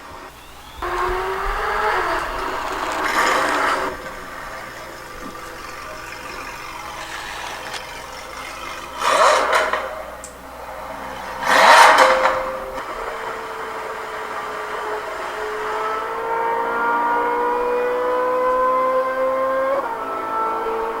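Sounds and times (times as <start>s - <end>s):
toy car engine revving: 0.0s - 21.0s.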